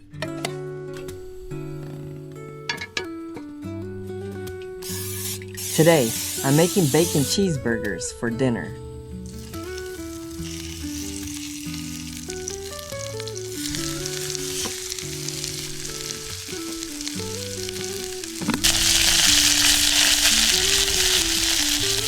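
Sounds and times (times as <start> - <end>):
background music: 0.0 - 22.0
food sizzling in a pan: 4.8 - 7.4, 9.1 - 22.0.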